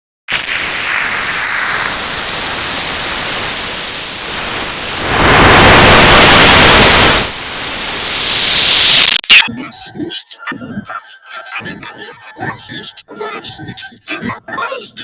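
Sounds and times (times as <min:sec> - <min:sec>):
distorted static hiss: 0:00.3 - 0:09.5
high whistling tones sweeping: 0:00.4 - 0:09.1.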